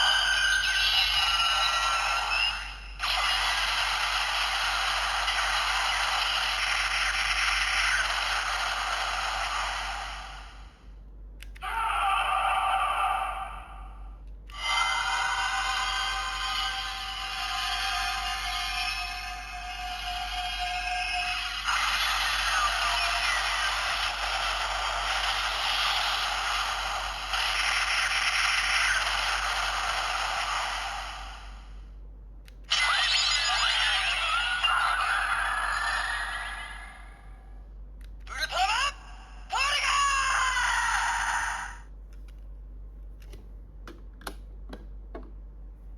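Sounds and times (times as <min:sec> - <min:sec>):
toy electronic voice call: 0:14.5 - 0:24.0, 0:32.7 - 0:37.0
hissing crackling from toy speaker: 0:19.8 - 0:31.7.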